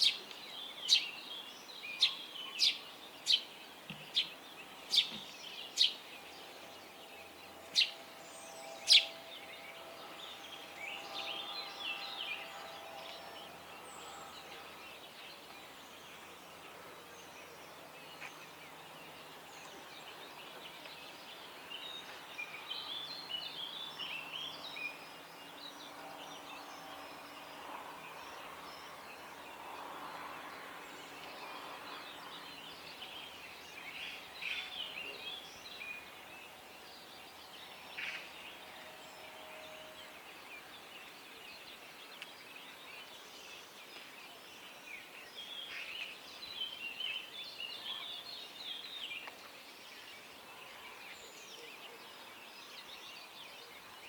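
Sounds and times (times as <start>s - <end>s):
small birds chirping and twittering: 0.0s - 54.0s.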